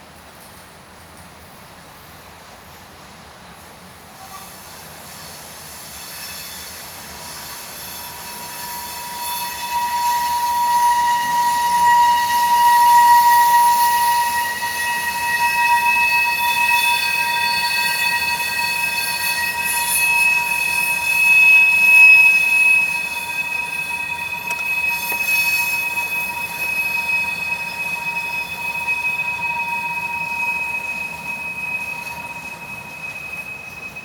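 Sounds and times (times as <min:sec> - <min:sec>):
train wheels squealing on rails: 0:00.0 - 0:34.0.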